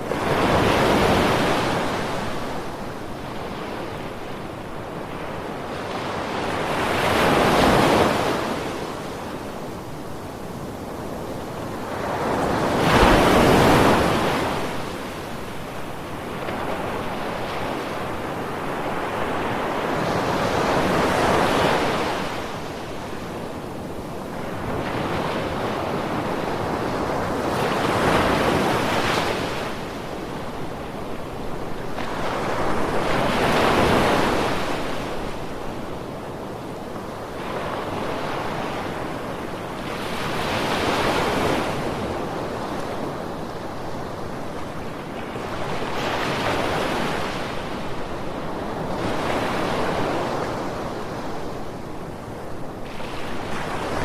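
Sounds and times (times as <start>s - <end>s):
surf washing: 0.0s - 54.0s
sea waves breaking: 12.0s - 15.0s.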